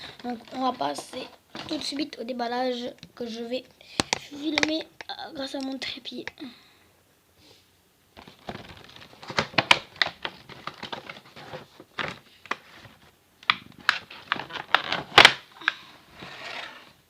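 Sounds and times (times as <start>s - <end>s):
clicks and taps of packaging: 4.0s - 6.4s, 8.2s - 15.8s
packaging rustling: 8.2s - 15.4s.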